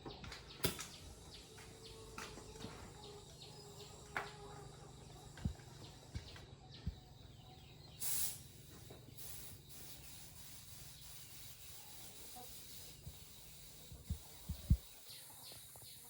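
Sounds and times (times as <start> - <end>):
hiss of escaping air: 8.0 - 15.1.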